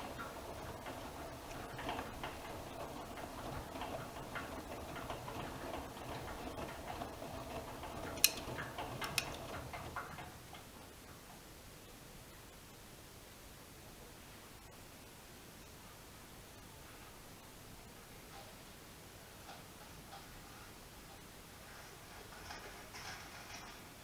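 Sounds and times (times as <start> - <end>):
washing machine drum turning: 0.0 - 10.4
faint hiss: 10.7 - 24.0.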